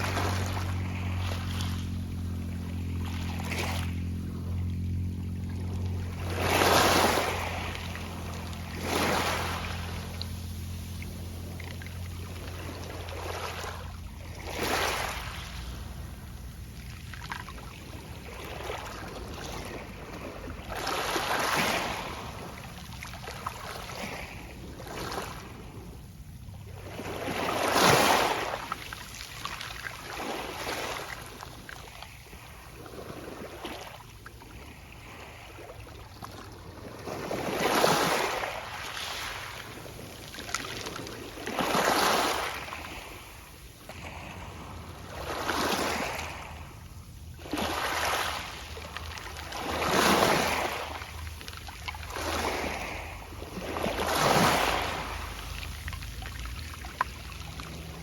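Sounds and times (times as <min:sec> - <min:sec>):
waves washing onto pebble beach: 0:00.0 - 0:17.0, 0:17.8 - 0:25.7, 0:36.8 - 0:46.8, 0:47.4 - 0:58.0.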